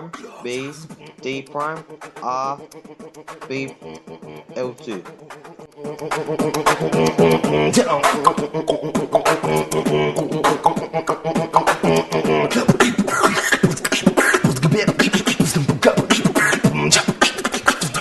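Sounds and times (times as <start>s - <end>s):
clicking beat: 0.0s - 18.0s
person singing: 0.0s - 18.0s.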